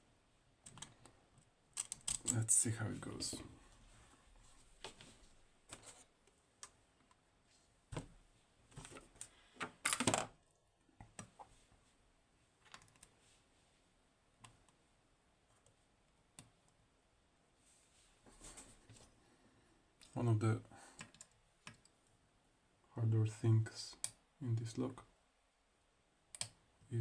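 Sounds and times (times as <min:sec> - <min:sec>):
lock pick metallic clicks: 0:01.8 - 0:02.4.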